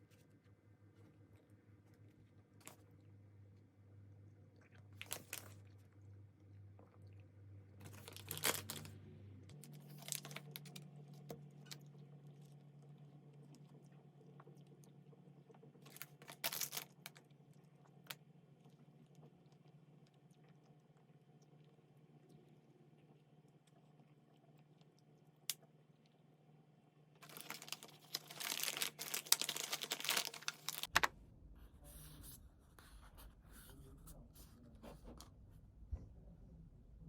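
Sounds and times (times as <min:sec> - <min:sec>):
steady low hum: 0:30.3 - 0:37.0.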